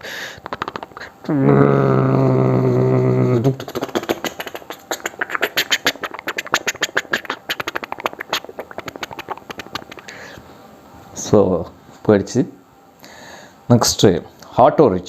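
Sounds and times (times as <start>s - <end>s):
man imitating a helicopter: 0.3s - 10.2s.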